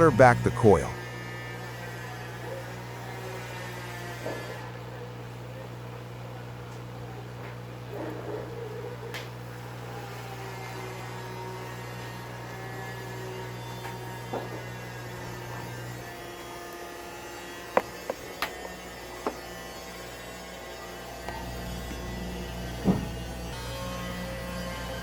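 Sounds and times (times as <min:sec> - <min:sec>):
low electric hum: 0:00.0 - 0:01.1.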